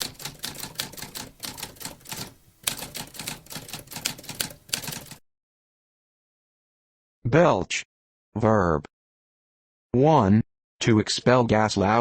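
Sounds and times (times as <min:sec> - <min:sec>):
typewriter keys clacking: 0:00.0 - 0:05.2.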